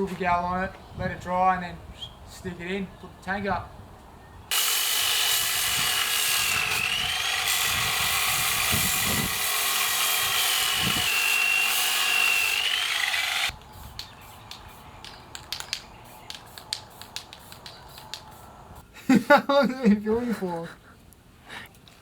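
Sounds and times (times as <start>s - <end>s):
power sander whining on steel: 4.5s - 13.6s.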